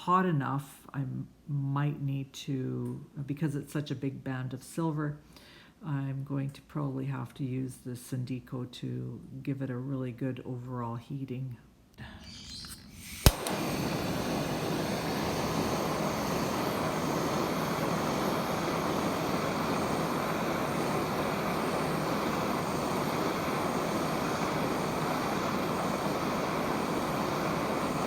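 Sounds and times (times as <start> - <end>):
torch flame hissing: 12.0 - 28.0
gas torch igniting pop: 12.3 - 28.0.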